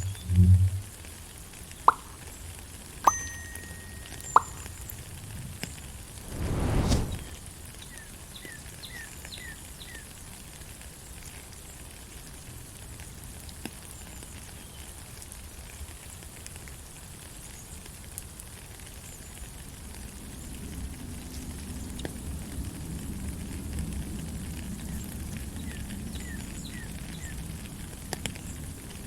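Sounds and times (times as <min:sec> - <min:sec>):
rain falling in forest: 0:00.0 - 0:06.2, 0:07.2 - 0:29.0
water drips: 0:01.8 - 0:02.4, 0:03.1 - 0:05.0
bird chirping: 0:01.9 - 0:02.2.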